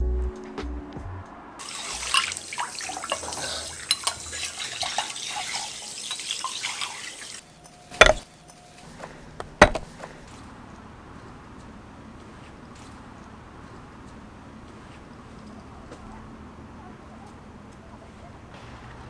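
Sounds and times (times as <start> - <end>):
running water: 1.6 - 7.4, 8.0 - 8.2, 9.4 - 9.9
sharp knocks: 8.0 - 8.2, 9.4 - 9.9.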